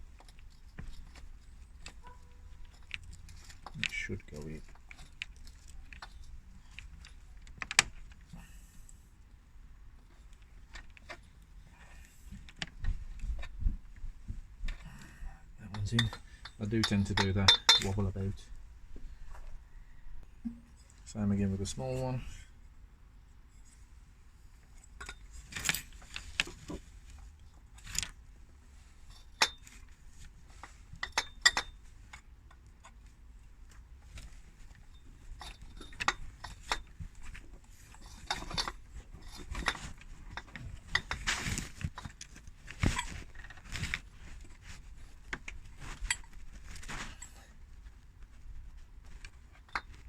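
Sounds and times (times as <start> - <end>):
light metallic clinks and knocks: 0.0 - 9.0, 10.0 - 18.6, 20.2 - 21.2, 24.7 - 28.2, 28.9 - 33.1, 33.7 - 47.9, 48.7 - 50.0.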